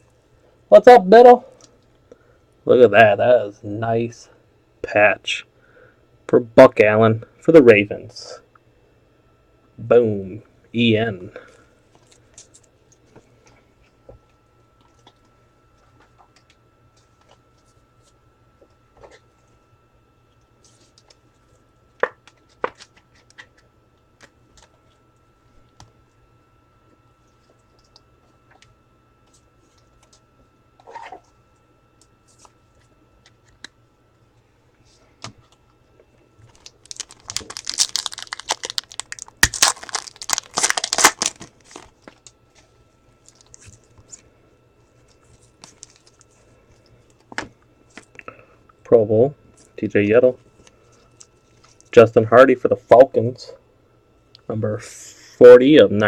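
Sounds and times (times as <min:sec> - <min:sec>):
foil wrapper tearing and crinkling: 0:36.5 - 0:42.0.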